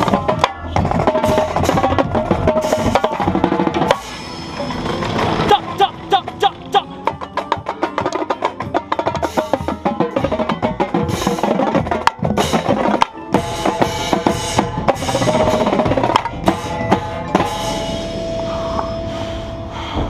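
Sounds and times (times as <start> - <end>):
tenor drums fast runs: 0.0 - 17.6
drumline playing: 0.0 - 18.5
sustained pitched tones: 0.8 - 8.4, 14.6 - 20.0.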